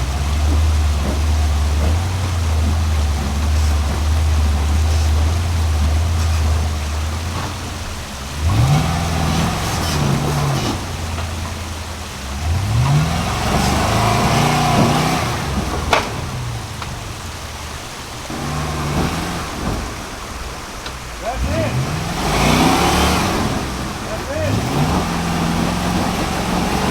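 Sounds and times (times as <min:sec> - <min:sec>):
off-road vehicle engine revving: 0:00.0 - 0:26.9.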